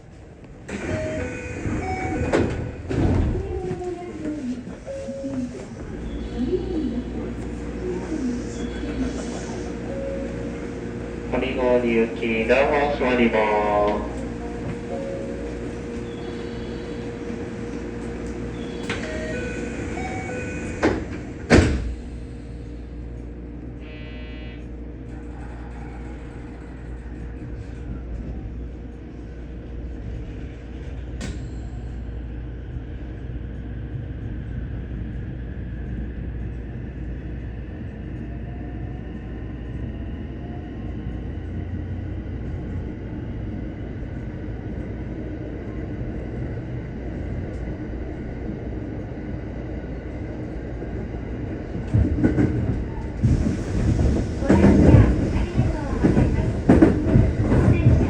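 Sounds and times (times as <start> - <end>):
train running rumble: 0.0 - 58.0
train door chime: 0.7 - 3.0, 18.6 - 21.7
sliding doors shutting with knocks: 20.0 - 21.9.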